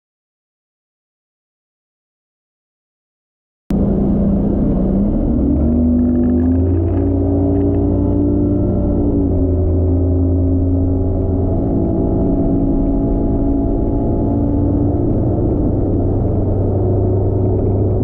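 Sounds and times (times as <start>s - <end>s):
outboard motor running: 3.7s - 18.0s.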